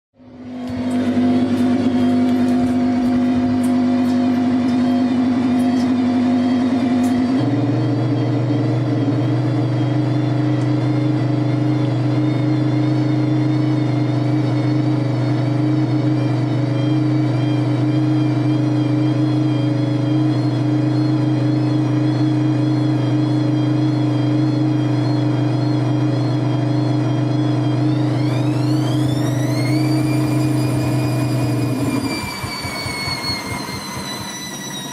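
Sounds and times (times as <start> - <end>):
washing machine motor hum: 0.2 - 34.9.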